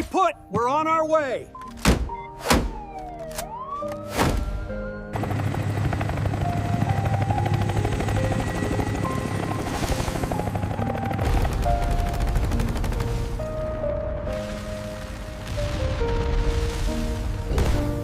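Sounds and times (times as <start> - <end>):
dramatic background music: 0.0 - 18.0
helicopter rotor chopping: 5.2 - 13.4.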